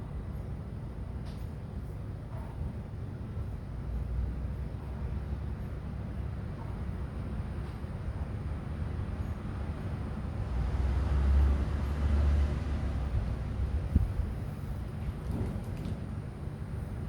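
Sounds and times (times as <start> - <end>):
low steady rumble: 12.6 - 15.3.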